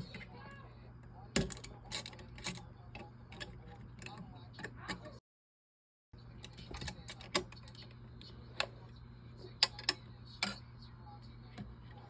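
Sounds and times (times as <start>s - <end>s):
steady low hum: 6.2s - 12.0s.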